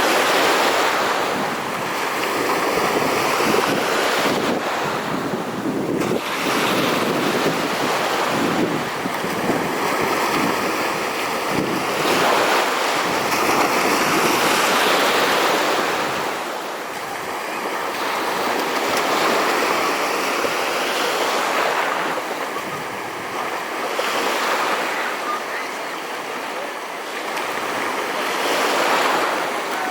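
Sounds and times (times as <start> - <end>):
rushing sea water: 0.0 - 29.9
wind buffeting microphone: 0.8 - 20.8, 21.4 - 23.8.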